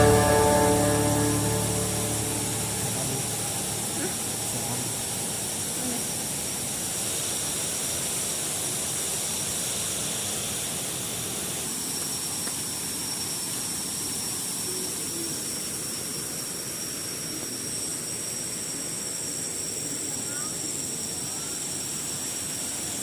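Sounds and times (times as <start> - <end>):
thin high tone: 0.0 - 5.9
small waterfall rushing: 0.0 - 17.2.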